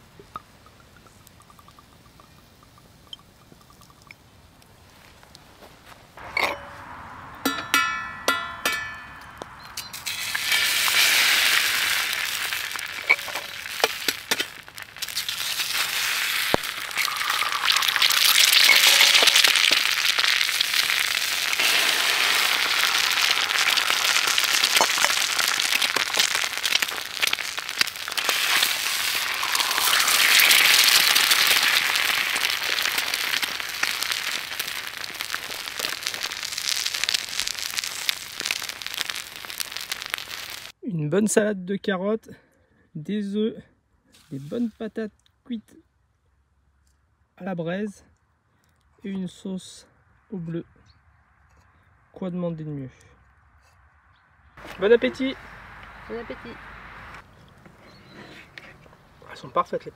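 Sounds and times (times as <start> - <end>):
eggs sizzling in a pan: 0.0 - 4.2, 9.9 - 40.8
crackles and pops: 0.0 - 6.6, 9.4 - 40.8, 54.6 - 57.6.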